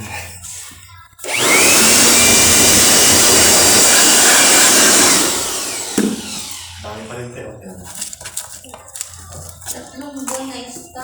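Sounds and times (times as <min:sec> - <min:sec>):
electric blower motor whining: 0:01.2 - 0:07.1.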